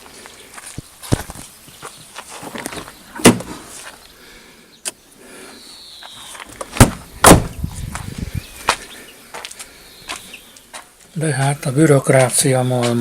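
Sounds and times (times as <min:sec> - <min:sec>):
sharp knocks and clunks: 0:02.6 - 0:03.6, 0:06.6 - 0:07.6.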